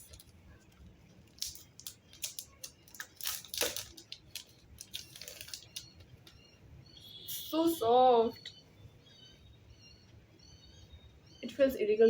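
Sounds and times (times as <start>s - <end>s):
e-reader case clicks and rustles: 0.0s - 6.4s.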